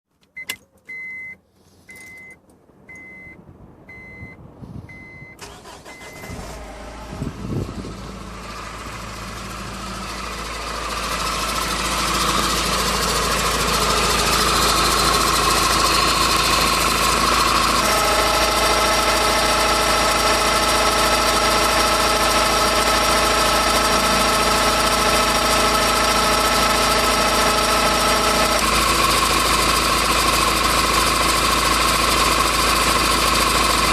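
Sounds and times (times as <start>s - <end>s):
car warning chime beeping: 0.3s - 6.5s
car engine running: 5.4s - 33.9s.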